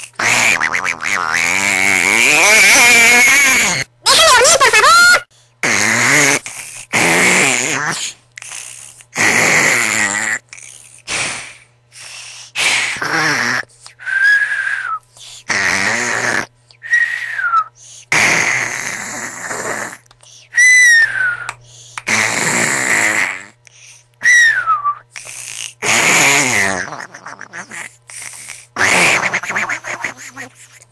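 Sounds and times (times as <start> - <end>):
person snoring loudly: 0.0 - 3.9, 5.6 - 11.7, 12.6 - 13.7, 14.3 - 17.2, 18.0 - 20.1, 20.8 - 24.0, 25.2 - 30.5.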